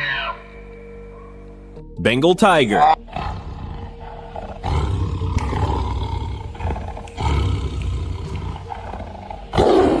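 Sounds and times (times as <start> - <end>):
tiger roaring: 3.0 - 10.0.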